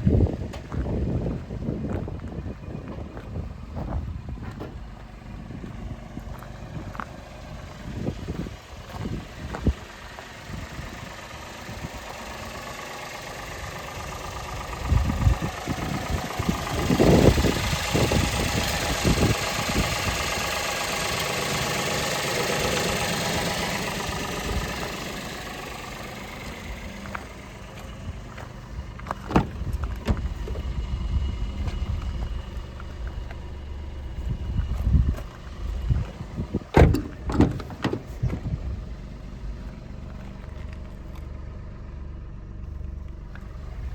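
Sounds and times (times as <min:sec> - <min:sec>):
car engine running: 0:00.0 - 0:43.9
knocks and clicks: 0:29.1 - 0:30.3, 0:36.7 - 0:38.5.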